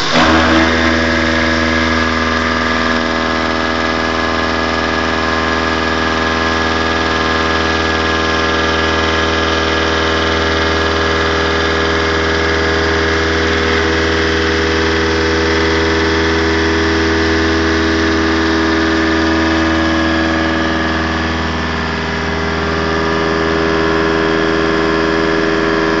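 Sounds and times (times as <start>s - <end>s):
metal milling noise: 0.0s - 3.0s
steady tones: 0.0s - 4.8s
low motor hum: 0.0s - 26.0s.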